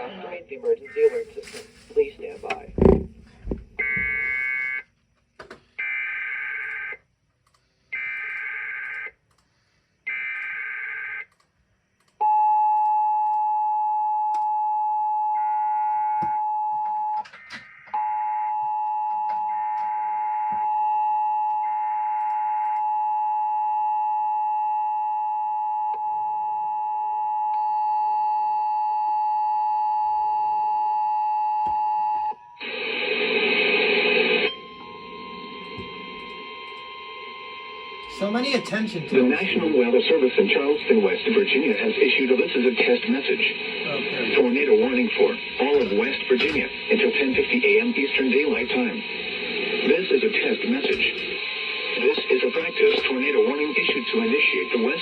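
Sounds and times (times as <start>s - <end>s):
steady two-tone attention signal: 34.4s - 40.2s, 51.0s - 55.0s.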